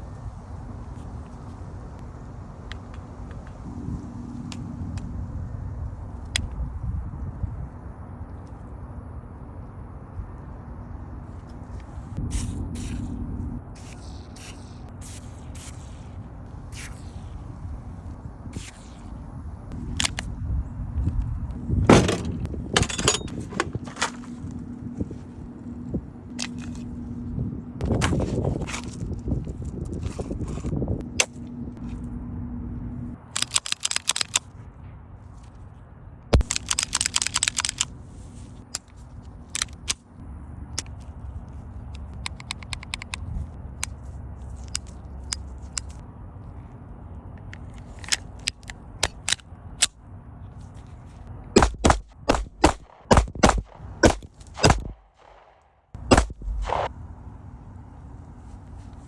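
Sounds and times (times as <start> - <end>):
pistol shots: 51.6 - 56.9.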